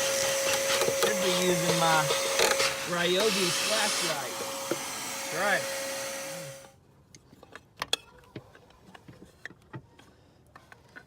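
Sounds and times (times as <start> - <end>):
vacuum cleaner running: 0.0 - 6.8.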